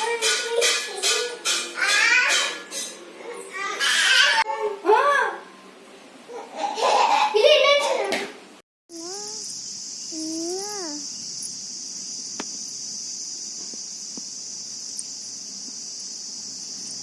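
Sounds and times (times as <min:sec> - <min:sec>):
crickets chirping: 0:08.9 - 0:17.0.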